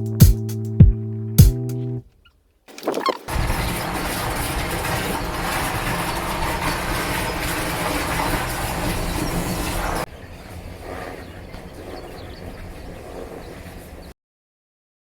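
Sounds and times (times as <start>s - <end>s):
low motor hum: 3.3s - 14.0s.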